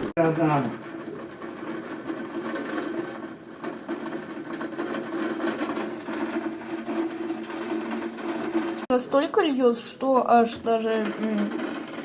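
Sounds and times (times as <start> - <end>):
heavy rain pelting: 0.0 - 8.9.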